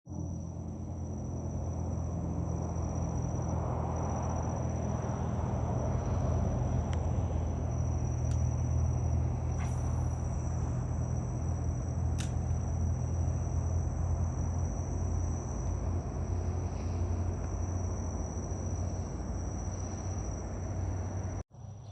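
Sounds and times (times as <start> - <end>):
insect trill: 0.1 - 21.9
low rumble: 0.1 - 21.9
sharp clicks: 12.1 - 12.5.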